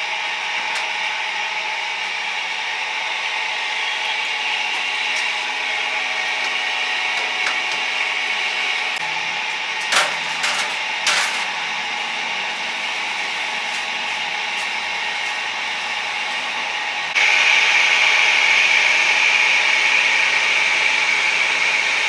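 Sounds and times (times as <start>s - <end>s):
grill hissing: 0.0s - 22.0s
tools clattering: 9.8s - 11.7s.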